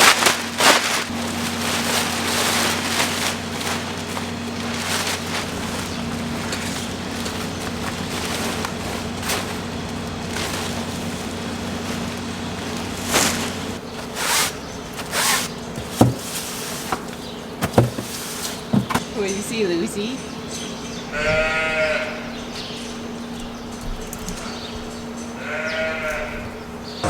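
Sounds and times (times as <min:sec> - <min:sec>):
rustling swishes: 0:00.0 - 0:19.0
low buzzing hum: 0:00.0 - 0:27.0.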